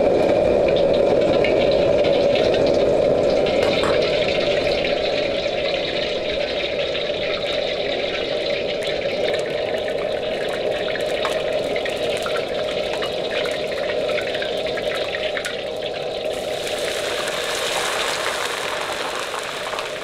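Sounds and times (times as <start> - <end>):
tap running into sink: 3.6 - 4.6
small splashing ticks: 8.8 - 18.2.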